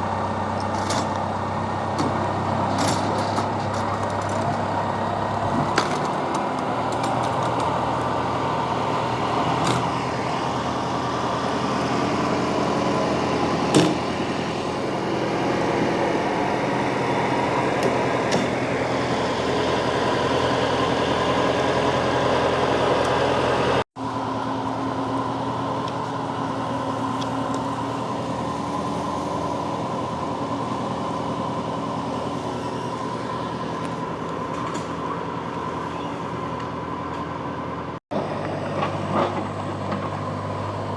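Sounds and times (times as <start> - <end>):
tractor engine running: 0.0 - 40.9
sharp knocks and clanks: 13.7 - 14.1.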